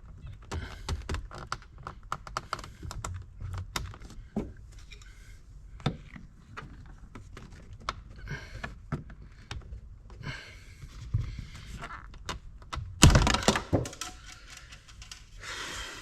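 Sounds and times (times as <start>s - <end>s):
plastic clips clicking under strain: 12.2s - 15.2s.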